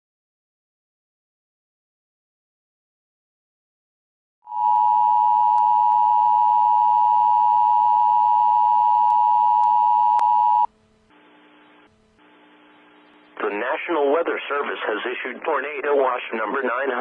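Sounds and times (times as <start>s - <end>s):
steady alarm beep: 4.5s - 10.7s
faint radio hiss: 11.1s - 17.0s.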